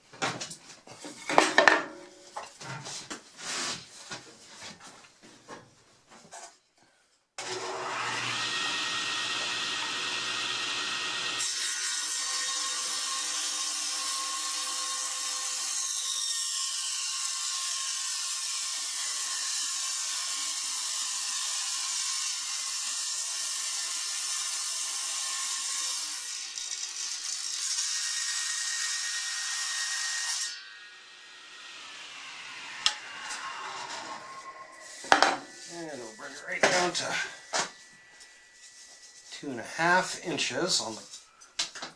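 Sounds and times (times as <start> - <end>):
table saw running: 7.4 - 39.3.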